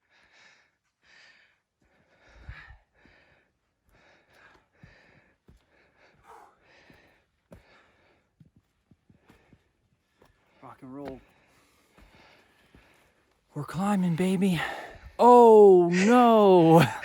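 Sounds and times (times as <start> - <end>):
person panting: 0.0 - 8.3.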